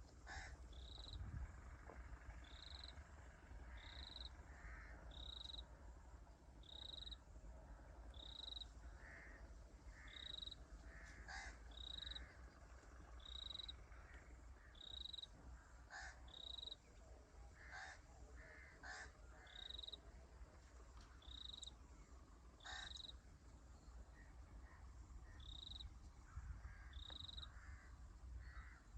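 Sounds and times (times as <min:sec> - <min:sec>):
steady low rumble: 0:00.0 - 0:28.9
harsh bird calls: 0:22.6 - 0:23.2.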